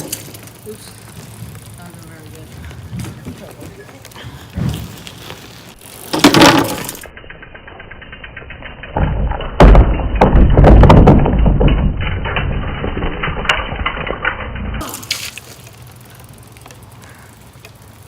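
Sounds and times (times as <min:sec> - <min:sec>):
bike hitting wooden plank: 0:00.0 - 0:07.2, 0:08.4 - 0:17.8
plank banging and clattering: 0:09.0 - 0:12.0.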